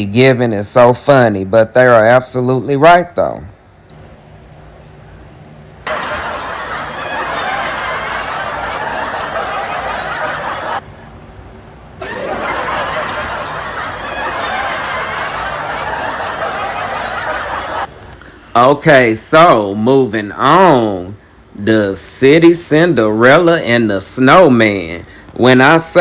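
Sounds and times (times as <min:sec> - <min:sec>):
crowd laughing loudly: 0:05.9 - 0:10.9, 0:12.0 - 0:17.9.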